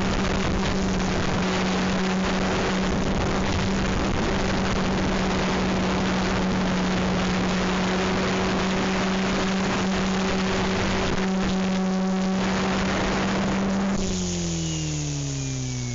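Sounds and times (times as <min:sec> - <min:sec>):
helicopter rotor humming: 0:00.0 - 0:15.9.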